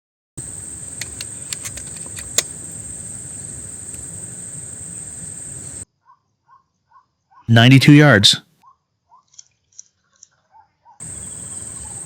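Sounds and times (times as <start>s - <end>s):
light clicks: 0.9s - 2.7s
sharp loud click: 1.0s - 2.6s.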